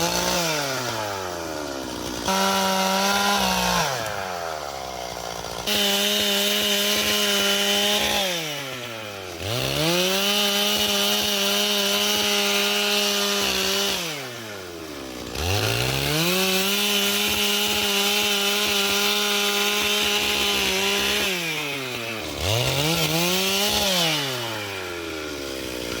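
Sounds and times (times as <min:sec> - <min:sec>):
chainsaw sawing through wood: 0:00.0 - 0:26.0.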